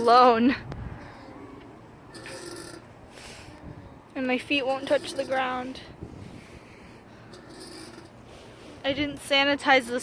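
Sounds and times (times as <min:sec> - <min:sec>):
wind rumbling on microphone: 0:00.5 - 0:01.5, 0:03.5 - 0:07.0.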